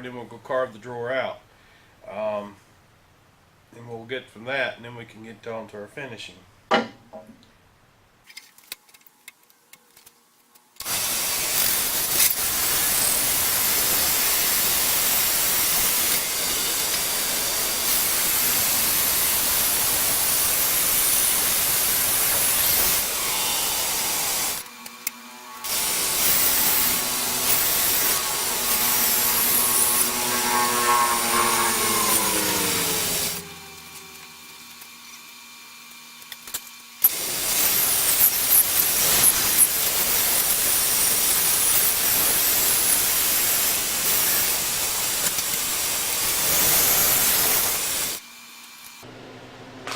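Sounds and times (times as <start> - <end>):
bandsaw cutting wood: 10.8 - 35.2, 37.0 - 48.2.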